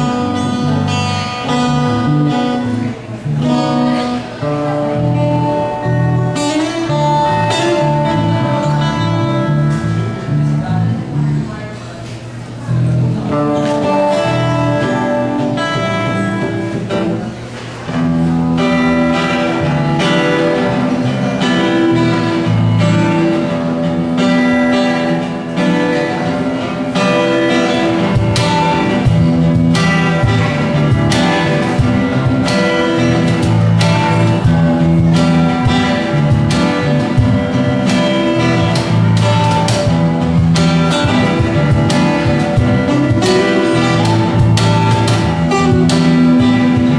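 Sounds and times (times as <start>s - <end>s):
acoustic band playing: 0.0s - 46.9s.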